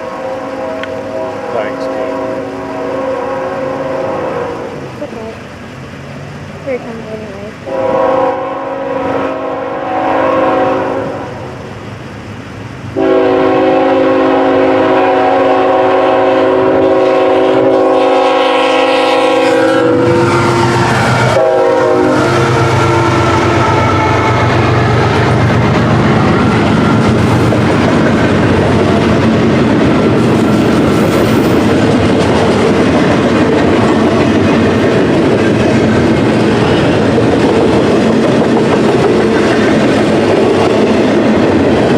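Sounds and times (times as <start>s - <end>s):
locomotive horn blasts: 0.0s - 4.8s, 7.7s - 11.4s, 13.0s - 25.1s
train cars rumbling and clacking: 0.0s - 41.9s.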